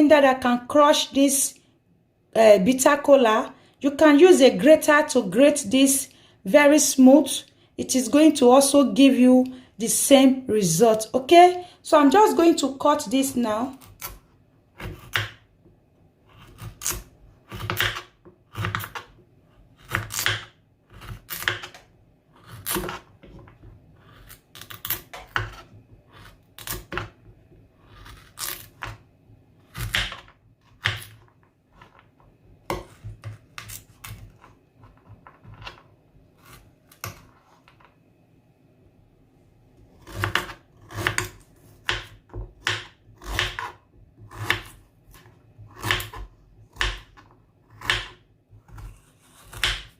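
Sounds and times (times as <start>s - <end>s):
knife cutting on a board: 14.8s - 15.4s, 16.2s - 21.8s, 22.4s - 27.2s, 27.8s - 29.0s, 29.6s - 32.0s, 32.7s - 35.8s, 40.0s - 49.9s.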